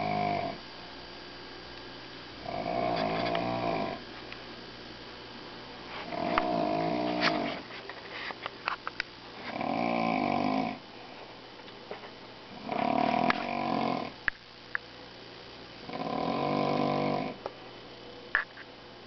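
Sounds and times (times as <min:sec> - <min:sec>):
person snoring loudly: 0:00.0 - 0:00.6, 0:02.4 - 0:04.0, 0:06.0 - 0:07.6, 0:09.4 - 0:10.8, 0:12.6 - 0:14.2, 0:15.8 - 0:17.4.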